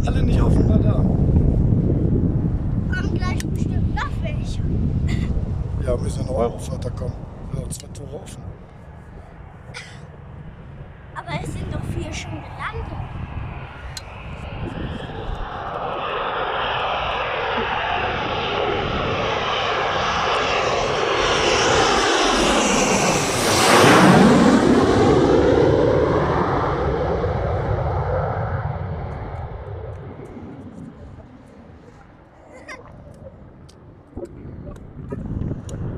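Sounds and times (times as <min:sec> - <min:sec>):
jet engine passing close by: 0:00.0 - 0:35.9.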